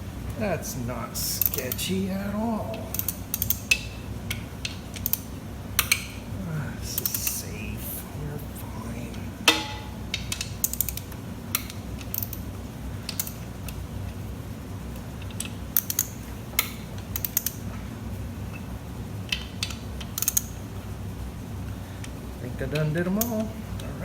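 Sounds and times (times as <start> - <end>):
hand ratchet clicking: 1.4 - 2.0, 2.7 - 6.2, 7.0 - 7.4, 9.4 - 12.5, 13.1 - 13.8, 15.0 - 17.7, 19.3 - 20.5
sharp metal knock: 9.5 - 10.0.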